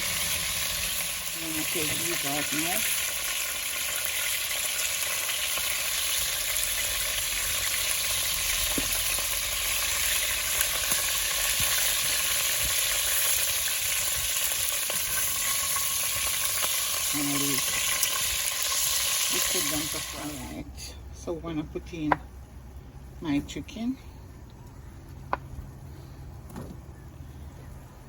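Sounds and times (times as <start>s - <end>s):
chicken sizzling in hot oil: 0.0s - 20.7s.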